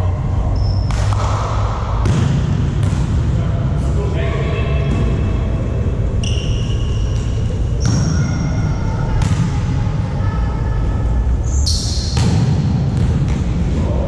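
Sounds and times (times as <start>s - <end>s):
shoe squeaks: 0.5s - 0.9s, 6.2s - 9.0s, 11.4s - 12.2s
volleyball hits echoing: 0.8s - 4.0s, 7.2s - 10.1s, 12.0s - 14.0s.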